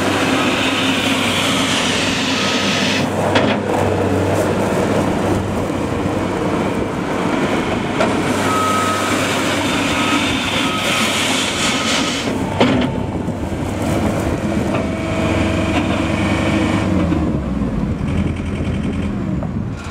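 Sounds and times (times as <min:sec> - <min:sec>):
diesel engine running: 0:00.0 - 0:19.9
thin whine: 0:08.4 - 0:16.0.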